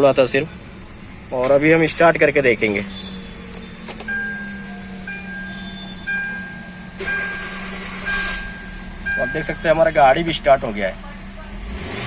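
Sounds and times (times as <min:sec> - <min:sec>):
dashboard warning chime beeping: 0:02.8 - 0:11.4.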